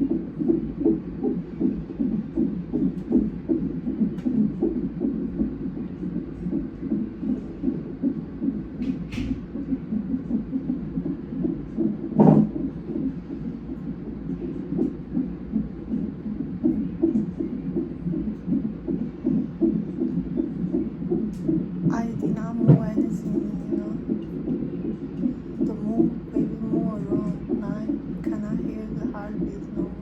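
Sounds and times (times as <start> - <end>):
fetal heartbeat pulsing: 0.0 - 30.0
thump: 8.8 - 9.4.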